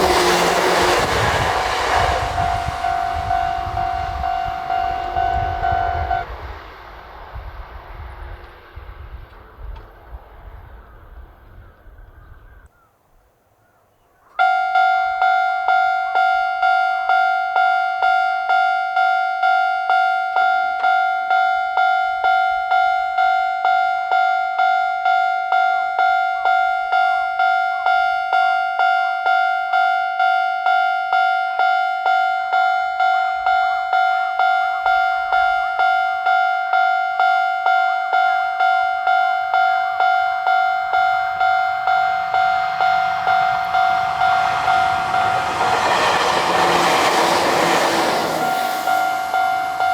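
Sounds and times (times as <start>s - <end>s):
level crossing warning bell: 0.0s - 6.3s, 14.4s - 49.9s
passing train: 0.0s - 12.8s, 14.1s - 49.9s.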